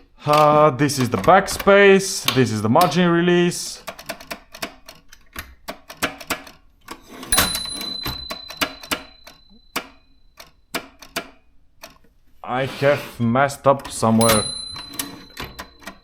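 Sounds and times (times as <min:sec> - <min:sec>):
typewriter bell ringing: 0:07.3 - 0:10.2, 0:14.2 - 0:16.0.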